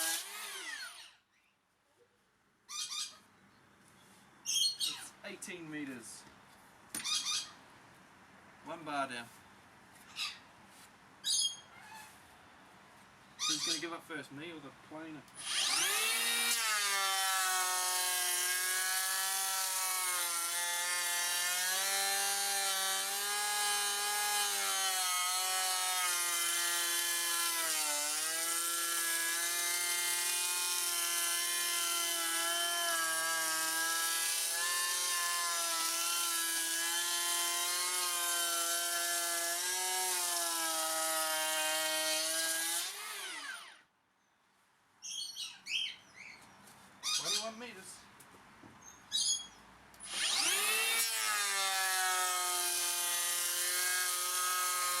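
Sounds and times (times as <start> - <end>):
electric planer cutting wood: 0.0 - 1.0, 15.4 - 43.8, 50.1 - 55.0.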